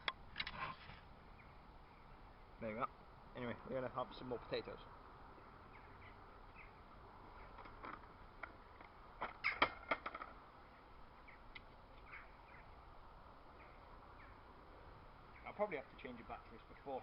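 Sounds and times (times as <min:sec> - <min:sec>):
sharp knocks and scrapes: 0:00.4 - 0:01.1.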